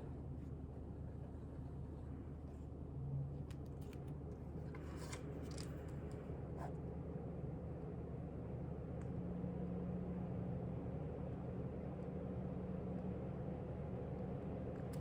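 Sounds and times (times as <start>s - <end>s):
low background hum: 0.0s - 15.0s
book page turning: 4.8s - 5.8s.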